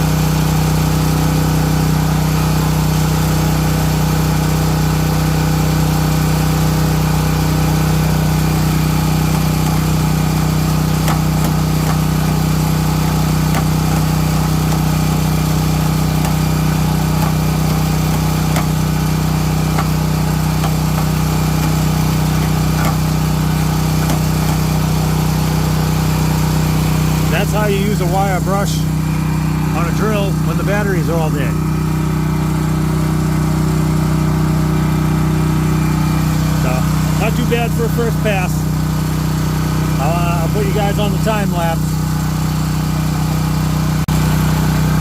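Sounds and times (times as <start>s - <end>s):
portable generator engine running: 0.0s - 45.0s.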